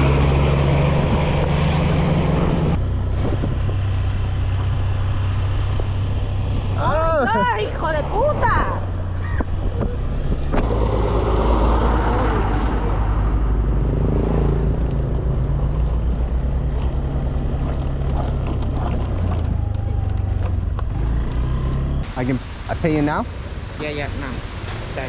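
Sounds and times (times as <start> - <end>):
wind and road rush: 0.0 - 25.0
scooter engine running: 16.1 - 22.0.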